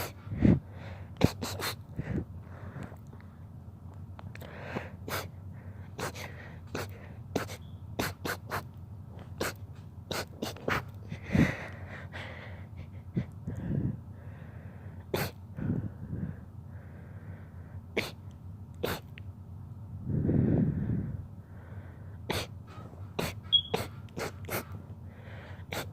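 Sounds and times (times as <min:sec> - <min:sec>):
breathing: 0:00.2 - 0:01.2, 0:01.9 - 0:03.4, 0:04.4 - 0:07.3, 0:11.1 - 0:17.9, 0:20.0 - 0:23.1, 0:24.5 - 0:25.9
person sneezing: 0:18.0 - 0:18.2, 0:18.8 - 0:19.1.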